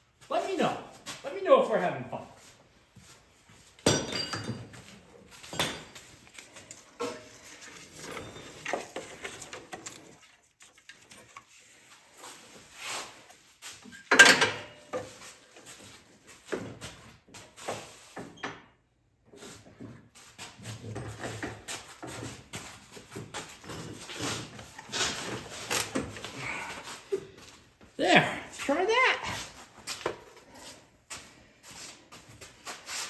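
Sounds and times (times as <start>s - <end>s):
metal tools clanking: 3.8s - 4.8s.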